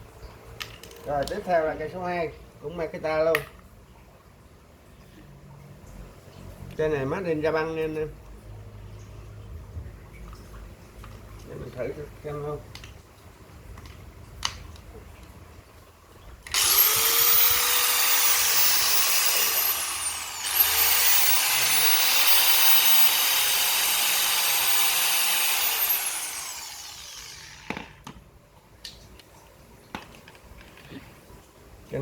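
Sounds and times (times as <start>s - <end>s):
power tool motor whine: 16.5s - 28.1s.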